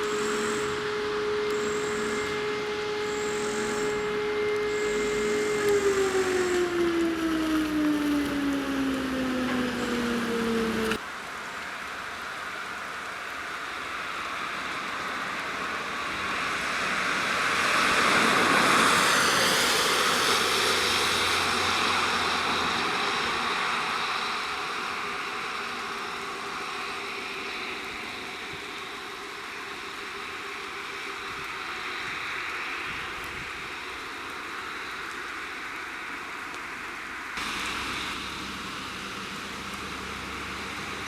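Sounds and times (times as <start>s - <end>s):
alarm siren winding down: 0.0s - 11.0s.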